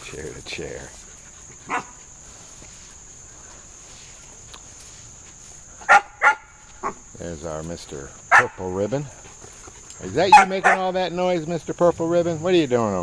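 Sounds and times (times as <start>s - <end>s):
puppy barking: 1.7s - 2.0s, 5.9s - 7.0s, 8.3s - 8.6s, 10.3s - 10.9s.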